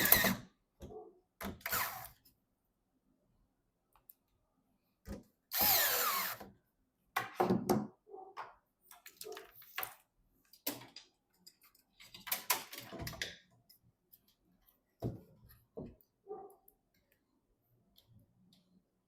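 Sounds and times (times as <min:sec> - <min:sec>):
small clicks and taps of parts: 0:08.8 - 0:15.2.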